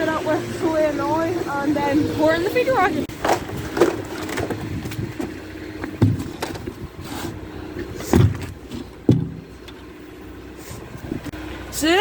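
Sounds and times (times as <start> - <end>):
farm machinery motor running: 0.0 - 12.0
heavy low thumps: 0.5 - 7.0, 7.8 - 9.6.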